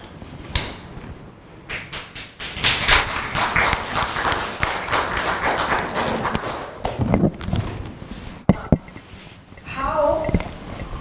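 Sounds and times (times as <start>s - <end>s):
audience clapping: 1.7s - 7.1s.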